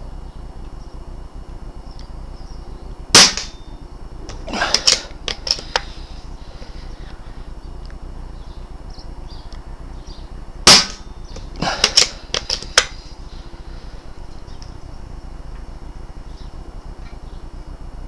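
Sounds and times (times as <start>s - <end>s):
air rifle shot: 3.1s - 3.7s, 4.3s - 5.9s, 10.6s - 13.0s
sharp clicks and knocks: 4.2s - 5.9s, 10.7s - 13.0s.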